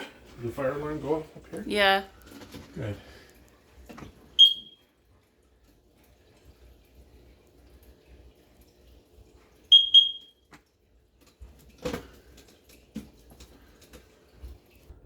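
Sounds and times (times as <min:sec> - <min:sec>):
high-pitched alarm beeps: 0:04.4 - 0:04.8, 0:09.7 - 0:10.3.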